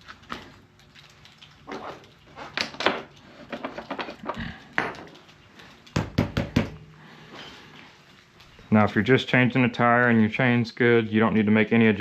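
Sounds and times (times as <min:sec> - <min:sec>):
sharp knocks: 0:06.0 - 0:06.8.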